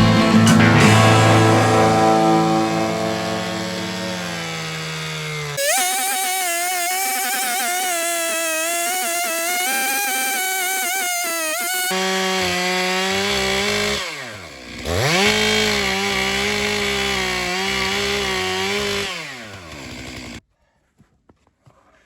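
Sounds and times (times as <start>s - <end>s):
short wavering pitched sound: 0.0s - 6.0s
chainsaw running: 0.0s - 20.4s.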